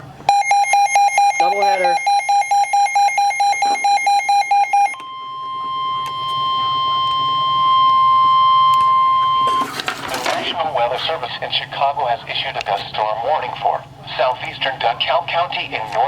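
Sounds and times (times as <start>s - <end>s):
electronic alarm beeping rapidly: 0.3s - 9.7s
steady warning alarm tone: 0.3s - 11.2s.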